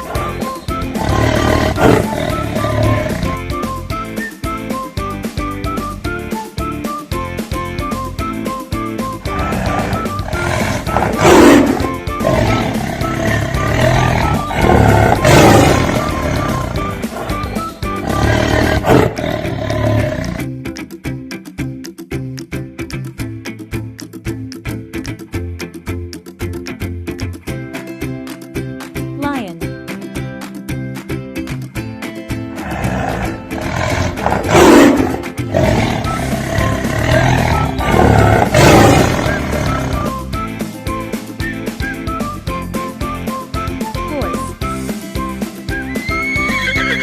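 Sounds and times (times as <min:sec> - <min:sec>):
large animal roaring: 0:00.0 - 0:03.5, 0:09.2 - 0:20.4, 0:32.6 - 0:40.2
background music: 0:00.0 - 0:47.0.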